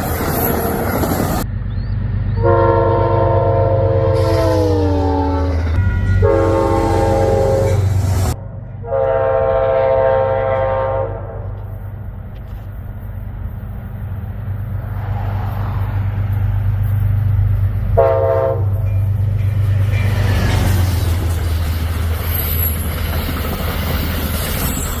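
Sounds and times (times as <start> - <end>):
locomotive rumble: 0.0 - 25.0
locomotive air horn: 2.4 - 11.7, 17.9 - 18.9.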